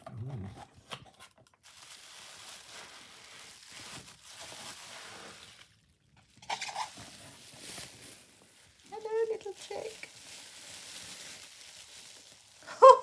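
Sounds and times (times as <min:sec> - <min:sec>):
packaging rustling and crinkling: 0:00.2 - 0:13.0.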